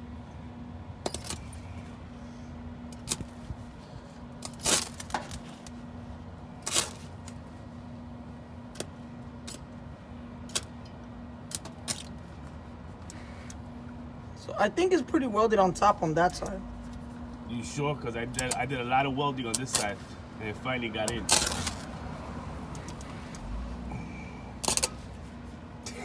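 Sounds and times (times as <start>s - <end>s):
steady low hum: 0.0s - 26.0s
sharp metallic clicks: 18.3s - 18.8s, 24.6s - 25.0s.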